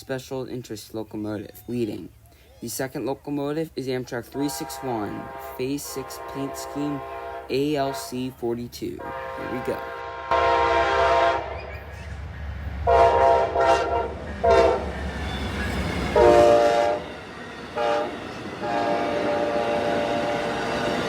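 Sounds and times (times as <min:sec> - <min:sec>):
locomotive air horn blasts: 0:04.4 - 0:08.2, 0:09.0 - 0:11.6, 0:12.9 - 0:14.9, 0:16.2 - 0:17.1, 0:17.8 - 0:20.8
train rumble: 0:09.0 - 0:21.0.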